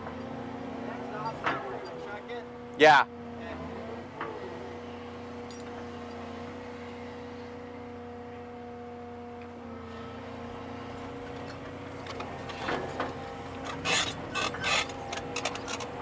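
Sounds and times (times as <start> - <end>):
excavator engine and hydraulics: 0.0 - 16.0
metal clanks and scrapes: 11.2 - 16.0.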